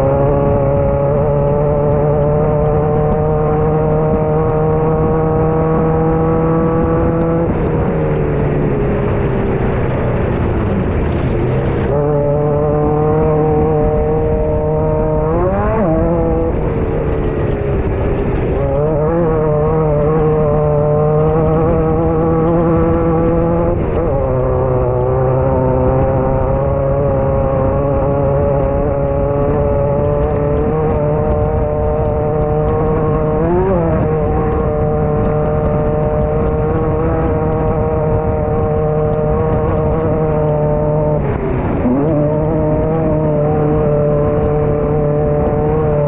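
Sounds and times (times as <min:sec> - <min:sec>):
engine at high revs: 0:00.0 - 0:46.0.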